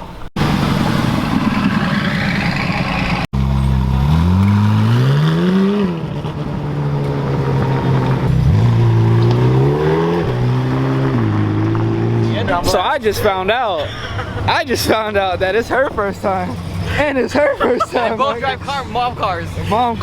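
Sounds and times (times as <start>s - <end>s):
car engine revving: 0.4s - 12.7s.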